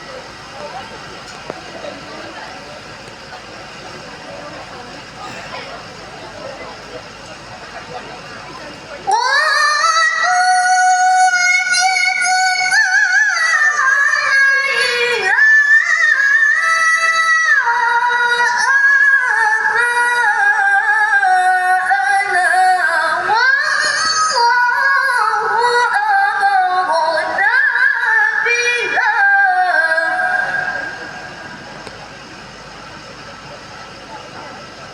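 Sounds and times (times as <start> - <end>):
woman reciting melodically: 8.5 - 31.6.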